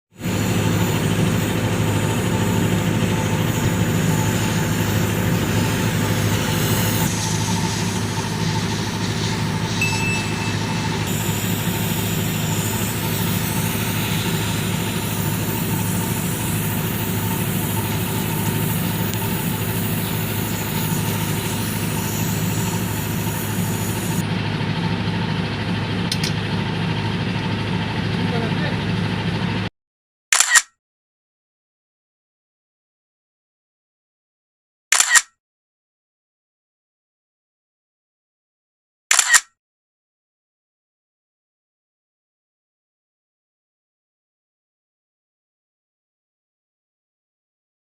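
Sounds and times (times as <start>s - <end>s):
truck engine idling: 0.2s - 29.7s.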